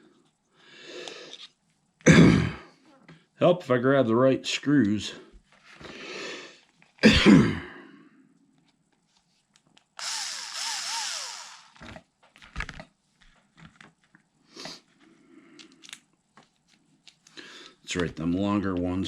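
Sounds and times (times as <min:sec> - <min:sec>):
small parts and tools clicking: 0:01.0 - 0:01.6, 0:09.5 - 0:14.2, 0:15.6 - 0:18.1
power screwdriver running: 0:10.0 - 0:12.0.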